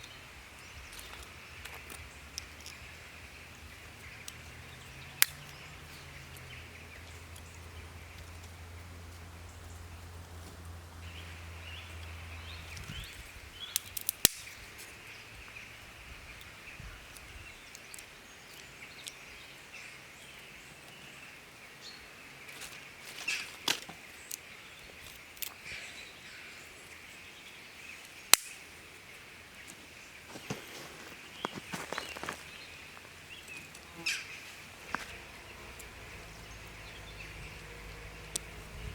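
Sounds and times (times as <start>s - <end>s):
campfire crackling: 0.0s - 19.2s, 26.6s - 38.8s
sharp pops of burning wood: 13.7s - 14.9s, 28.2s - 28.7s.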